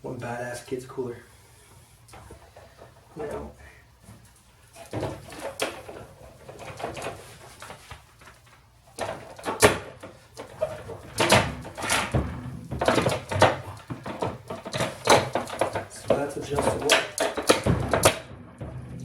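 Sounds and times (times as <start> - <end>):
fridge shelves being moved: 4.7 - 18.2
plastic bottles clattering in fridge: 4.8 - 18.2.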